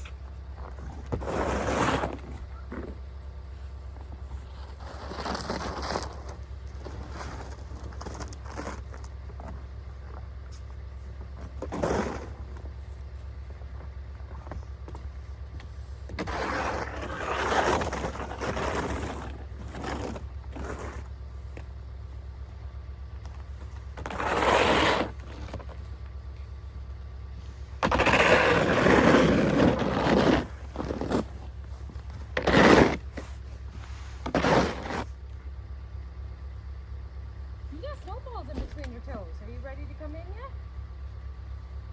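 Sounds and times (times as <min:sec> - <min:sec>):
low engine drone: 0:00.0 - 0:41.9
snow shovel scraping: 0:00.8 - 0:03.0, 0:04.3 - 0:09.0, 0:11.4 - 0:12.6, 0:16.1 - 0:21.1, 0:23.9 - 0:25.8, 0:27.8 - 0:35.2.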